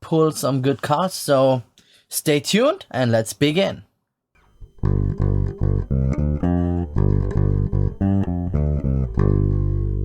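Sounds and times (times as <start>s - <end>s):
guitar and bass riff: 4.4s - 10.0s.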